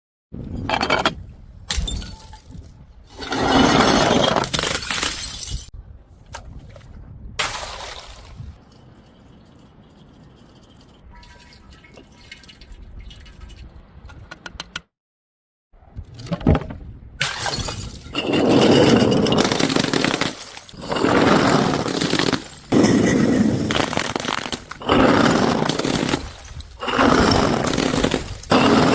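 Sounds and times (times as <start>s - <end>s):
glass bottles smashing: 1.7s - 5.7s, 7.4s - 8.3s, 17.2s - 28.9s
glass crunching: 3.8s - 5.7s, 17.2s - 28.9s.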